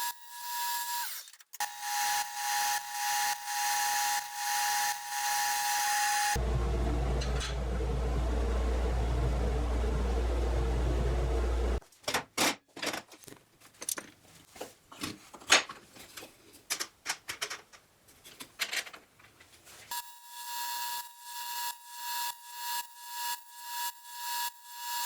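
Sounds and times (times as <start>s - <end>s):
power tool whining: 0.0s - 11.8s.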